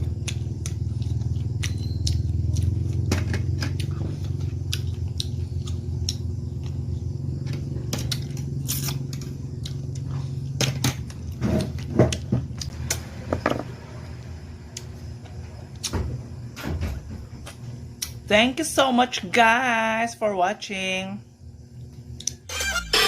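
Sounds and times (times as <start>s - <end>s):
chewing: 0.0s - 13.0s
low hum: 0.0s - 18.3s.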